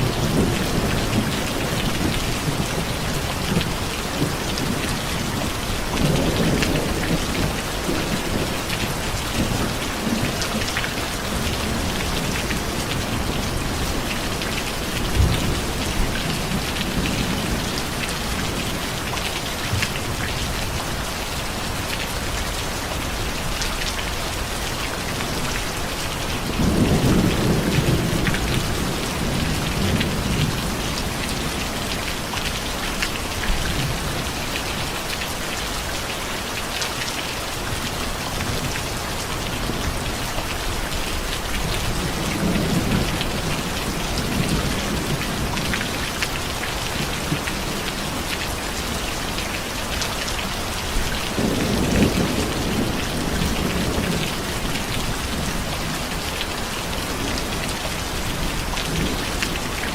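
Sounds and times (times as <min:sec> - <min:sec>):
low rumble of thunder: 0:00.0 - 0:21.1, 0:24.1 - 0:32.6, 0:37.8 - 0:48.9, 0:50.6 - 0:56.4
heavy rain falling: 0:00.0 - 0:59.9.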